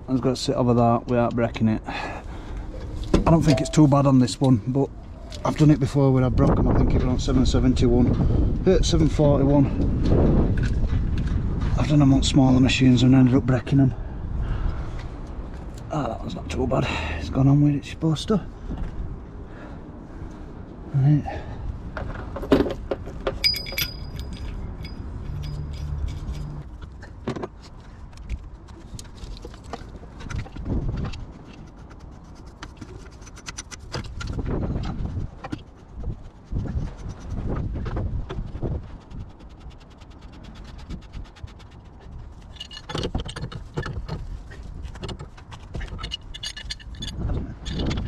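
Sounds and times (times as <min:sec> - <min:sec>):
metal tools clinking: 0:02.8 - 0:04.5, 0:23.2 - 0:26.8, 0:42.4 - 0:44.2, 0:44.9 - 0:48.0
ringing metal clink: 0:03.4 - 0:03.9, 0:23.4 - 0:26.5
small irregular clicks: 0:24.2 - 0:37.6.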